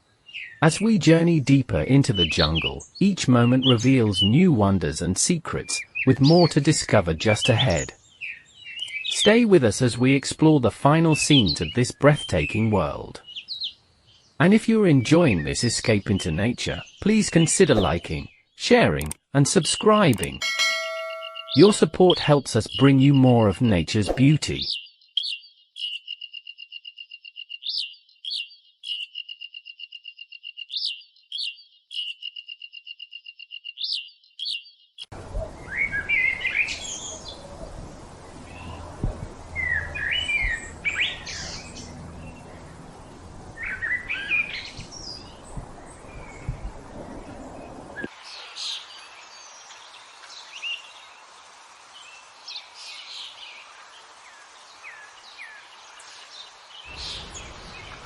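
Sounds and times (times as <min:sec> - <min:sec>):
birds chirping: 0:00.0 - 0:04.7, 0:05.5 - 0:09.4, 0:11.0 - 0:26.0, 0:33.8 - 0:51.1, 0:52.1 - 0:58.0
bird trilling: 0:20.4 - 0:21.9
varied bird calls: 0:24.6 - 0:37.6.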